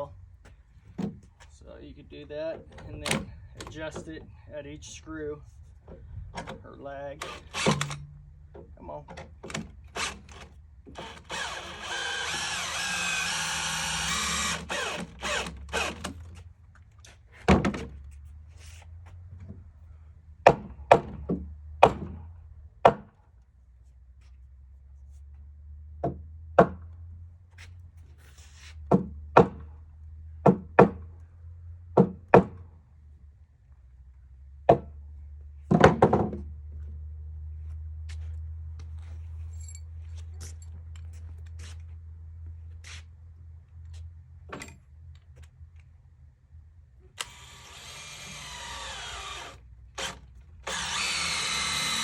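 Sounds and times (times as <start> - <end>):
continuous noisy run: 0.0 - 16.6, 46.7 - 52.0.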